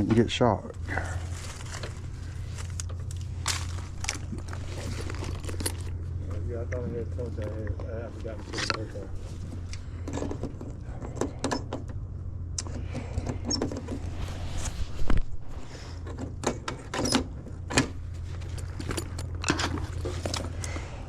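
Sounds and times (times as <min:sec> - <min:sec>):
air conditioning unit hum: 0:00.0 - 0:21.0
tools clattering and knocking metal: 0:16.5 - 0:20.8.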